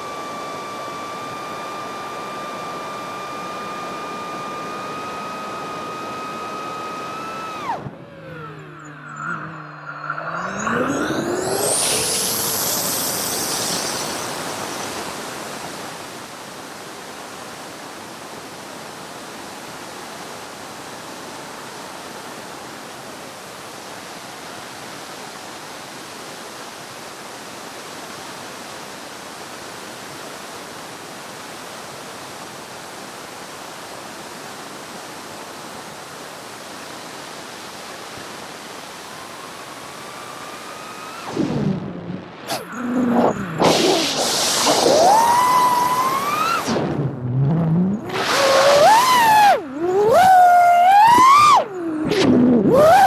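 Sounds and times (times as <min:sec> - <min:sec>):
drone motor whine: 0:00.0 - 0:15.9, 0:39.0 - 0:53.0.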